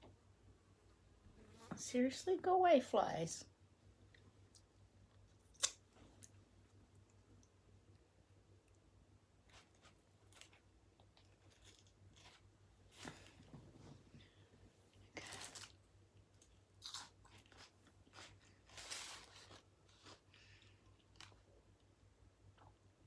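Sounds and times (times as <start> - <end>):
person chewing a burger: 9.5 - 12.5, 14.9 - 21.5
crunchy bites: 15.2 - 20.3.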